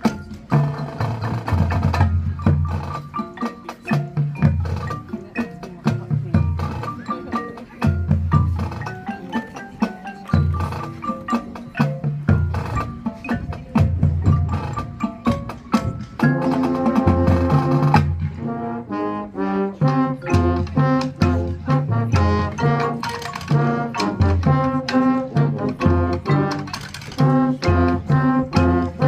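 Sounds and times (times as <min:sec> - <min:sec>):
low drums: 0:00.0 - 0:29.0
mallet keyboard notes: 0:00.0 - 0:29.0
marching band playing: 0:00.0 - 0:29.0.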